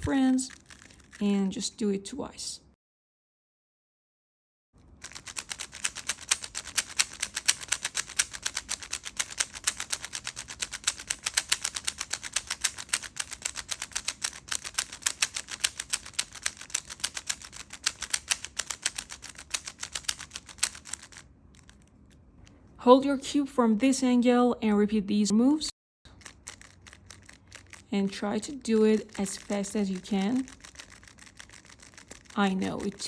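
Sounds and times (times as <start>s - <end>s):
puzzle cube plastic clicks: 0.5s - 1.2s, 5.0s - 22.6s, 26.1s - 33.0s.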